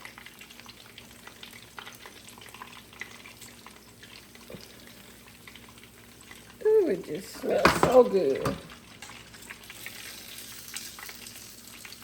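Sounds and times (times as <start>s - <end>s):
frying oil crackling and sizzling: 0.0s - 12.0s.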